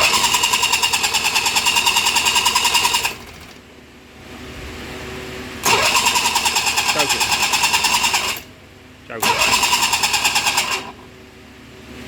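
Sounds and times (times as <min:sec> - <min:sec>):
outboard motor cranking: 0:00.0 - 0:03.6, 0:05.6 - 0:08.5, 0:09.2 - 0:11.1.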